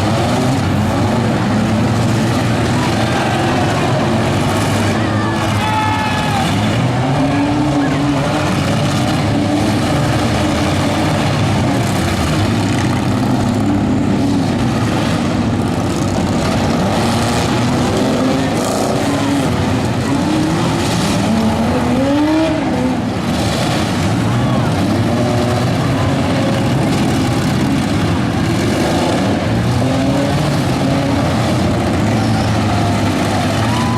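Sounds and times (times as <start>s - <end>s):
car engines revving: 0.0s - 33.9s.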